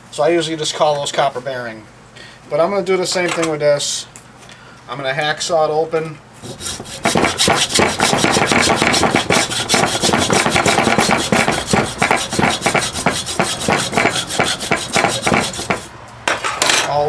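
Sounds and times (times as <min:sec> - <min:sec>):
hacksaw cutting metal: 0:06.4 - 0:15.9.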